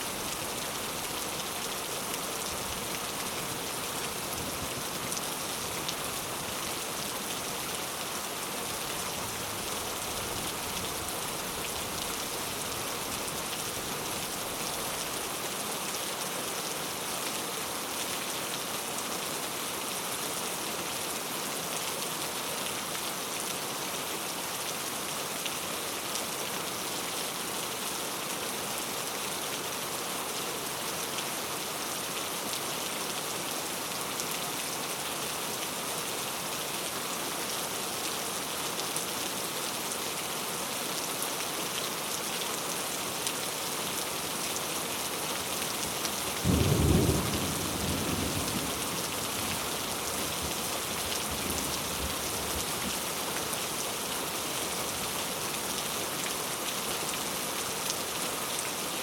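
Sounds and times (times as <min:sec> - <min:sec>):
rain hissing: 0:44.9 - 0:53.5.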